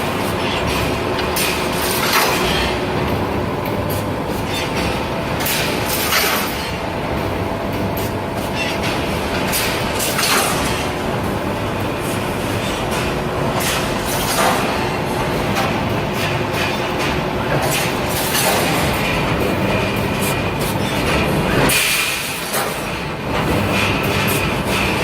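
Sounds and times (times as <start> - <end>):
loud machine clatter: 0.0 - 25.0
welding machine running: 0.0 - 25.0.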